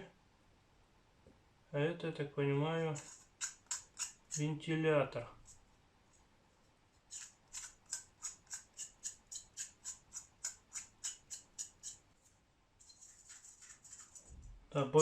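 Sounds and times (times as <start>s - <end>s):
fan impeller scraping on housing: 12.8s - 14.4s.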